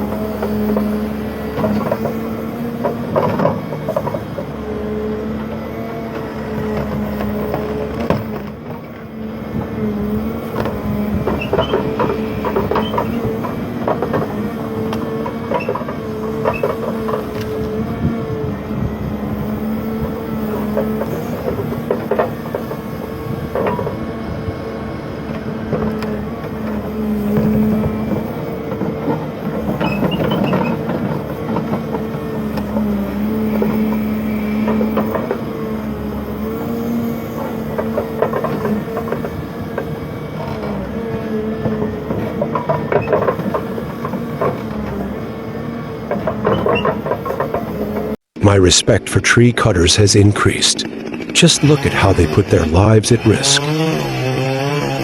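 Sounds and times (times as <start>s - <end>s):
irregular knocks and cracks: 19.3s - 48.2s
machine engine running: 50.6s - 55.0s.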